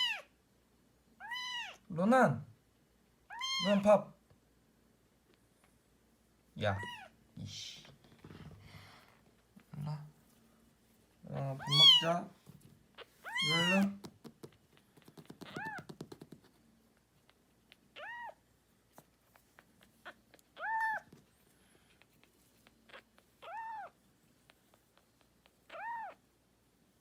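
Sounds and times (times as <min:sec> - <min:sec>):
cat meowing: 0:00.0 - 0:00.3, 0:01.2 - 0:01.9, 0:03.3 - 0:03.8, 0:06.8 - 0:07.2, 0:11.5 - 0:12.1, 0:12.9 - 0:14.0, 0:15.4 - 0:16.0, 0:17.9 - 0:18.4, 0:20.0 - 0:21.1, 0:22.9 - 0:24.0, 0:25.6 - 0:26.2.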